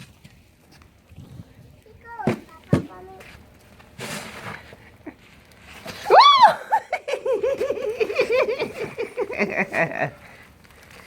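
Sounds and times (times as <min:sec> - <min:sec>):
child squealing: 0:06.1 - 0:06.6
child giggling: 0:06.5 - 0:10.2.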